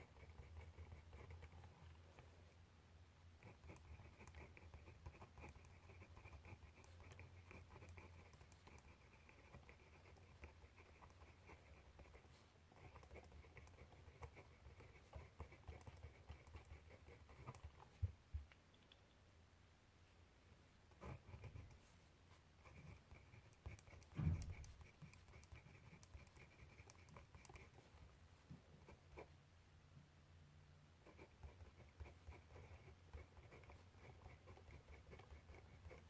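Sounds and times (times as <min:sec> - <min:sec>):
handwriting scratching on paper: 0:00.0 - 0:01.8, 0:03.4 - 0:18.1, 0:20.9 - 0:21.9, 0:22.6 - 0:28.0, 0:31.0 - 0:36.0.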